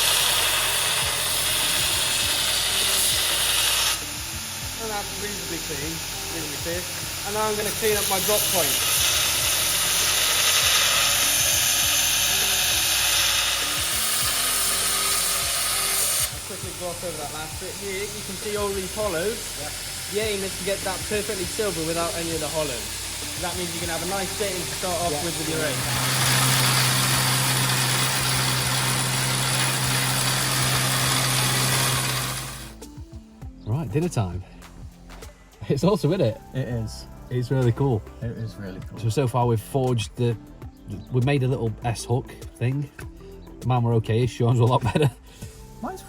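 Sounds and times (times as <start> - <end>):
belt grinder grinding steel: 0.0 - 32.9.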